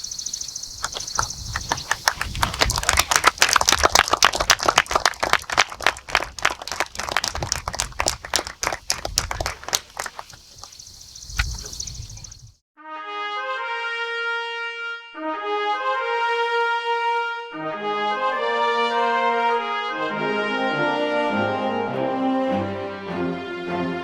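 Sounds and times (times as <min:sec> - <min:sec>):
small crowd applauding: 0:00.8 - 0:10.7.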